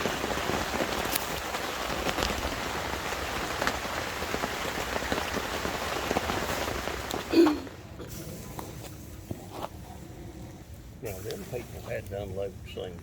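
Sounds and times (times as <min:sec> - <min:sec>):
raindrops ticking close by: 0:00.0 - 0:09.4
steady rain falling: 0:00.0 - 0:13.0.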